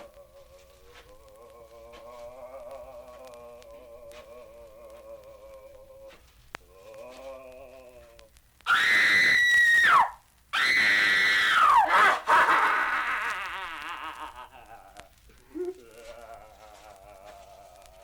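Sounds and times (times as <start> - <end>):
high-pitched screams: 0.0 - 6.1, 6.9 - 14.6
wavering moaning tone: 0.0 - 8.3.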